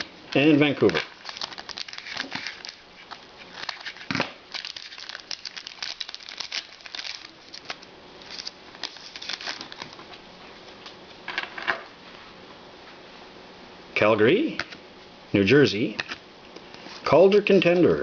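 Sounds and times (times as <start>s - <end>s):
card pack wrapper crinkling: 0.3s - 10.0s.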